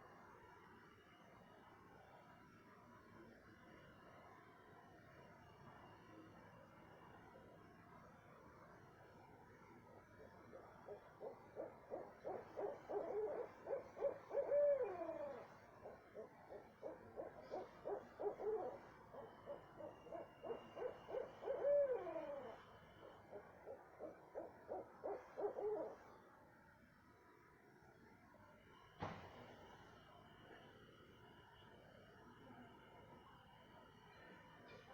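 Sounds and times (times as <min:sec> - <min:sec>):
owls hooting: 0:10.3 - 0:26.2.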